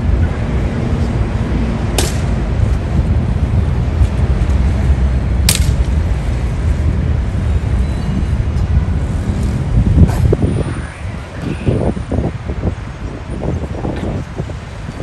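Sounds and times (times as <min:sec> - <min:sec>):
road traffic rumble: 0:00.0 - 0:15.0
sharp click: 0:05.5 - 0:05.9.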